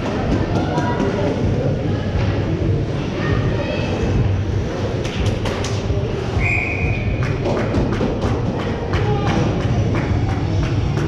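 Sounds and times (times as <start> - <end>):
whistle blast: 6.4 - 7.1.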